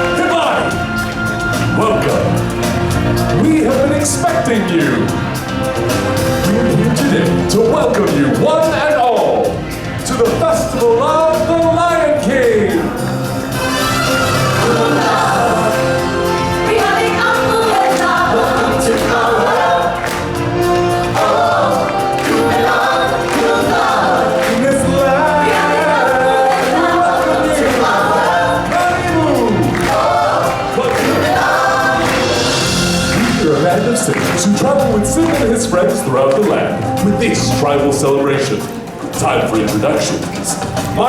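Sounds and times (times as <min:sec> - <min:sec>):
choir singing with band: 0:13.4 - 0:36.0.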